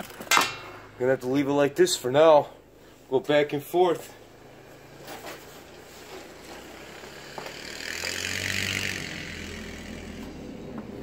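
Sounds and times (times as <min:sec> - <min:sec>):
vehicle passing: 0:03.8 - 0:11.0.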